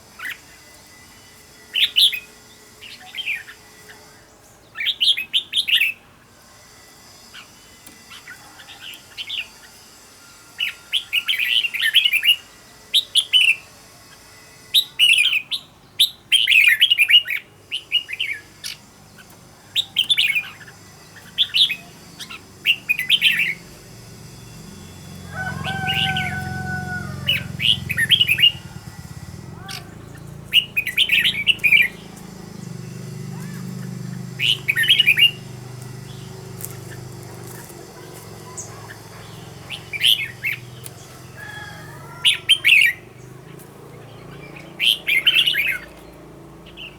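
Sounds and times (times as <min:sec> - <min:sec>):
bird singing chirpy phrases: 0:27.3 - 0:41.4.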